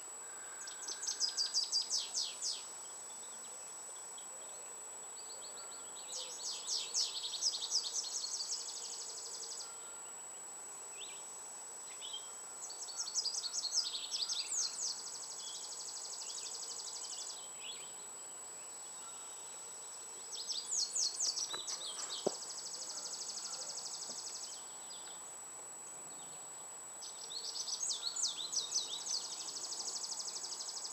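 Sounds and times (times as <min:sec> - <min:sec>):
songbird singing: 0:11.0 - 0:25.3, 0:26.1 - 0:30.9.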